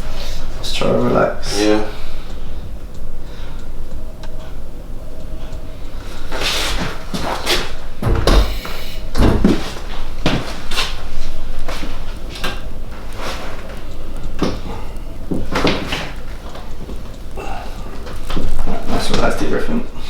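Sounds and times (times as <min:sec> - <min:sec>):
knocks and rustling on treatment table: 0:06.3 - 0:11.0, 0:14.4 - 0:17.0
heavy thud: 0:07.1 - 0:10.4.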